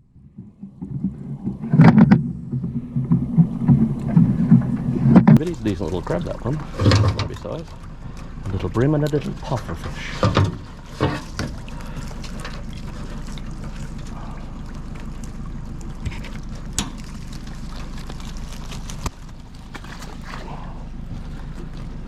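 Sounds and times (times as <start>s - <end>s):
sharp knocks: 0.0s - 5.5s
loud clattering knocks: 0.0s - 6.0s
steady low hum: 0.0s - 22.0s
water trickling: 0.0s - 22.0s.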